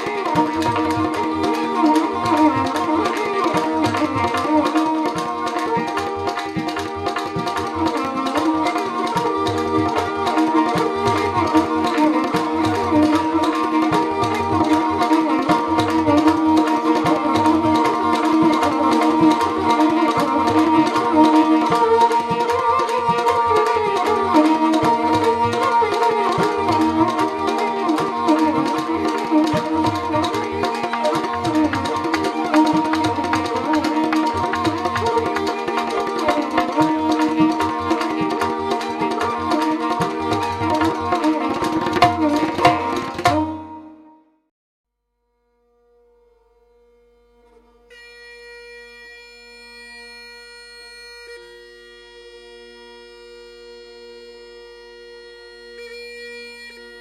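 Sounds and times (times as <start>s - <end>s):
hand drum: 0.0s - 43.8s.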